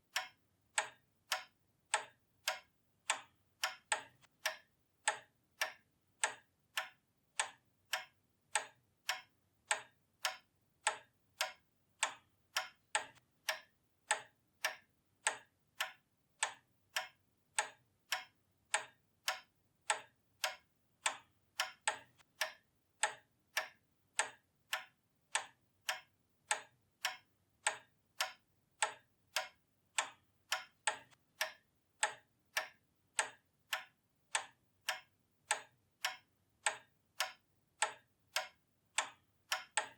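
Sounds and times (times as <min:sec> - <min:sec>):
pendulum clock ticking: 0:00.0 - 0:39.9.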